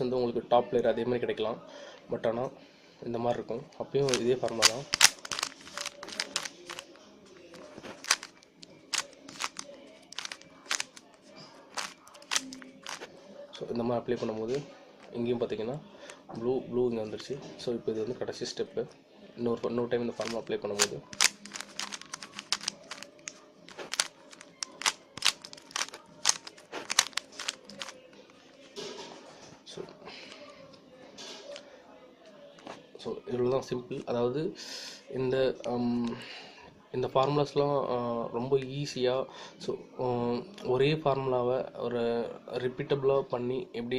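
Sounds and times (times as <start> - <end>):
puzzle cube twisting clicks: 4.1 - 6.9, 8.0 - 11.2, 11.8 - 13.1, 20.2 - 27.9.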